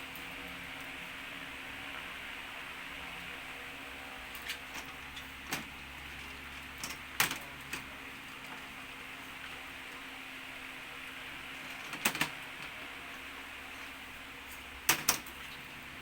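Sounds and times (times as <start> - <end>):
background hiss and hum: 0.0 - 16.0.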